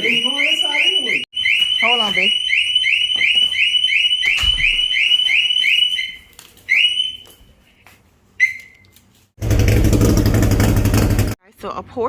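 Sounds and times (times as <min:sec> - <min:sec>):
car warning beeps: 0:00.0 - 0:07.2.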